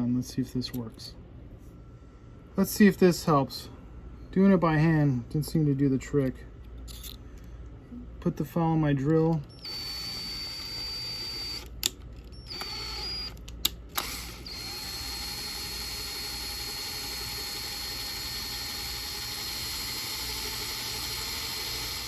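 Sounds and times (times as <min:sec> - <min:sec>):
electric drill whining: 0:09.5 - 0:11.7, 0:12.3 - 0:13.4, 0:14.0 - 0:22.0.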